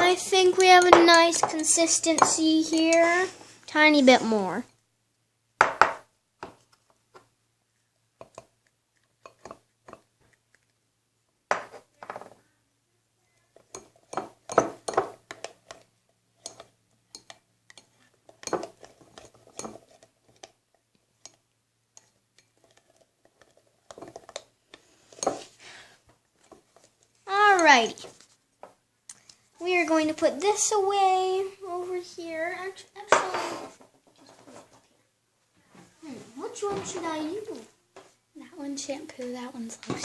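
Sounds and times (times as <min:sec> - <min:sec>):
utensil scraping a bowl: 0:33.3 - 0:34.8.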